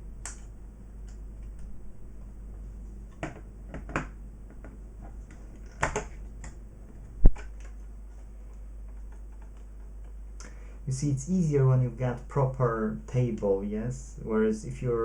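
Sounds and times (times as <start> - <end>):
low mains hum: 0.0 - 15.0
plastic clicks and taps: 3.1 - 6.6.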